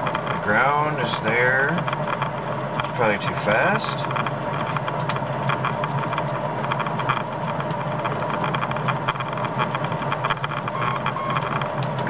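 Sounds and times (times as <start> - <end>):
relay buzzing: 10.7 - 11.6.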